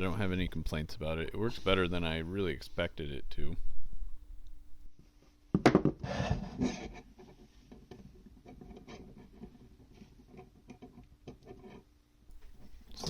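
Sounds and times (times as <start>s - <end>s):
rubbing and scraping: 6.0s - 13.0s.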